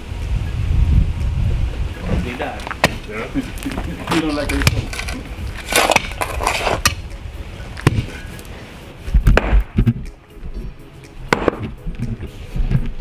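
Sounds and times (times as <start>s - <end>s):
background music: 4.2s - 13.0s
sledgehammer striking concrete: 9.2s - 9.9s, 11.3s - 11.7s.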